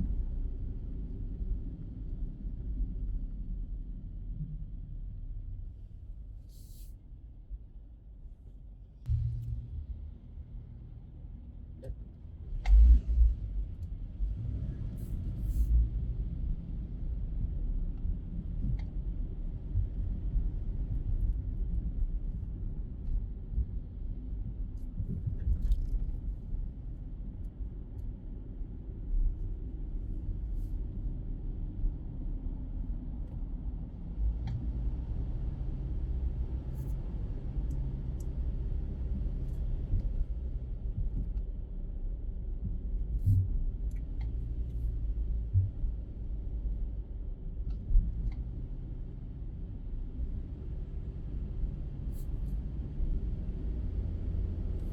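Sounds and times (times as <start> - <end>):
car road and engine noise: 0.0 - 54.9
sharp thump: 9.1 - 10.2.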